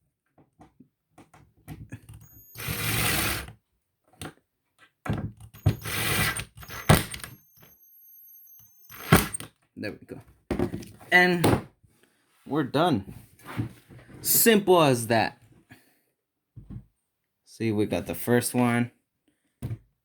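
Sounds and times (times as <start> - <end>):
impact driver whining: 2.0 - 3.5, 5.4 - 9.5.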